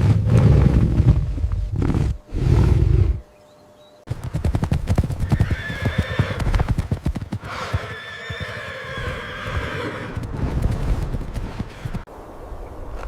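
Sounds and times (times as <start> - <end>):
clattering hoofbeats: 4.1 - 7.8.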